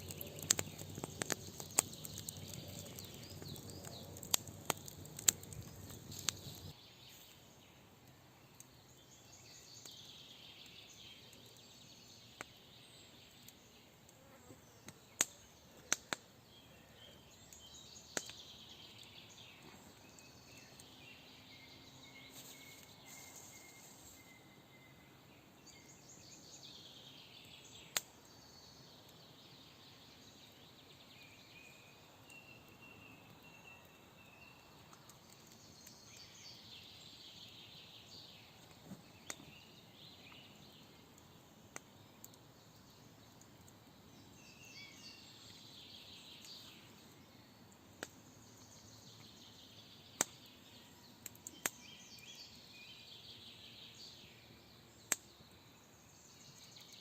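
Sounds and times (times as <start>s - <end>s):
sharp cracks: 0.0s - 6.7s
birds chirping: 0.0s - 7.3s.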